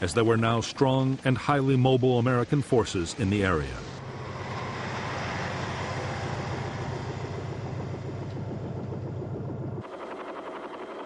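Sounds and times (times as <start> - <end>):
fast even pulsing: 2.4 - 11.0
heavy engine humming: 3.5 - 11.0.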